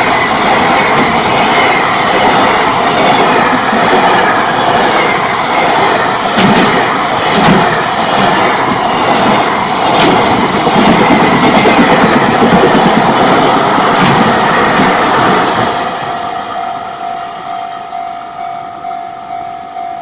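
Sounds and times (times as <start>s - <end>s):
wheels clacking over rail joints: 0.0s - 15.8s
train wheels rushing on rail: 0.0s - 20.0s.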